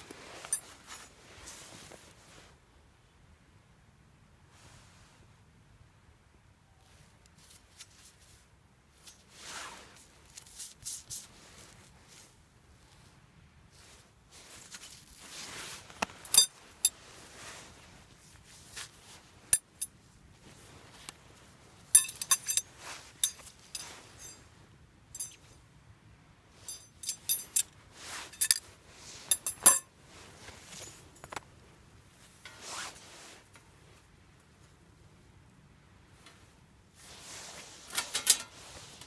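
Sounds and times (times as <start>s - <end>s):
metal camping gear clinking: 0.0s - 2.2s, 13.8s - 25.6s, 26.5s - 34.0s, 36.1s - 39.0s
soft rustling: 0.0s - 2.6s, 4.5s - 5.3s, 6.8s - 25.7s, 26.4s - 39.0s.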